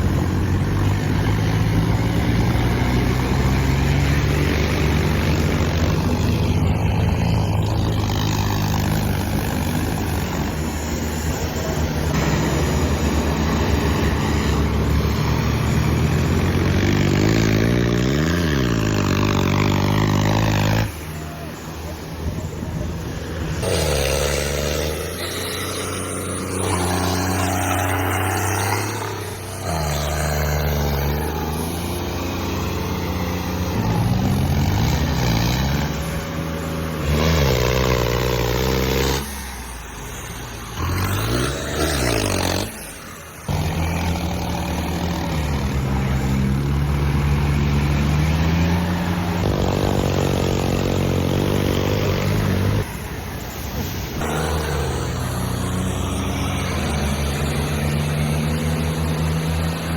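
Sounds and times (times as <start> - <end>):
heavy diesel engine revving: 0.0 - 59.9.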